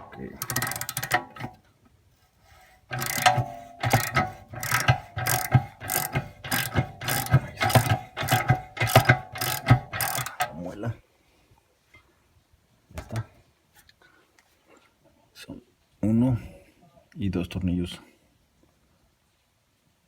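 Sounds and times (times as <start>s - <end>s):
socket ratchet wrench clicking: 0.4s - 1.5s, 2.9s - 10.6s.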